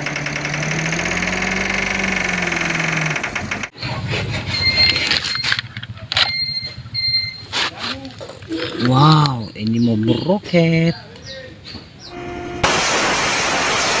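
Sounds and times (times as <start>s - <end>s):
toy truck mechanical hum: 0.0s - 8.2s
short high beeps: 6.2s - 7.5s.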